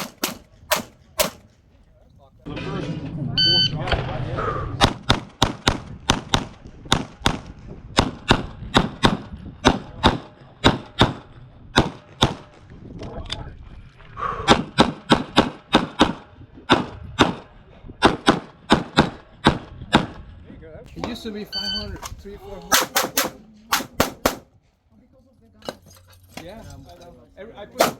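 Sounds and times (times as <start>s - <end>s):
rapid pistol shots: 0.0s - 1.5s, 18.0s - 20.1s, 22.7s - 24.5s.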